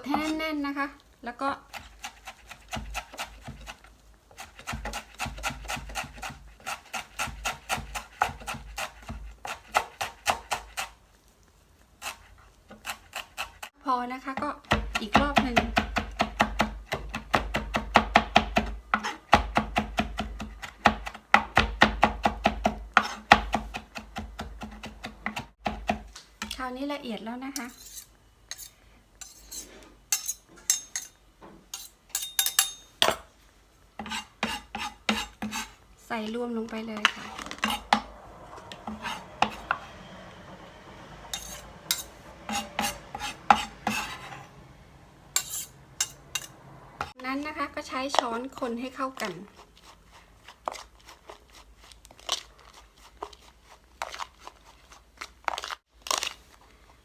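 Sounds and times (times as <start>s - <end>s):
utensils scraping dishware: 0.0s - 0.5s, 27.6s - 33.3s, 37.0s - 40.0s, 41.3s - 44.6s, 45.4s - 47.2s
knife chopping on cutting board: 1.7s - 11.0s, 14.7s - 26.6s, 34.0s - 35.8s, 41.4s - 44.4s.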